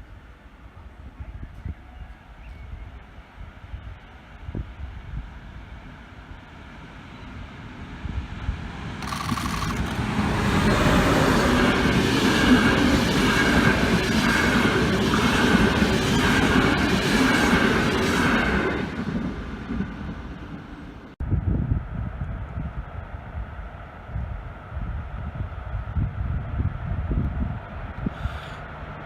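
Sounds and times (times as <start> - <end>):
train passing: 1.9 - 29.0
wheels rattling over rail joints: 8.8 - 20.8.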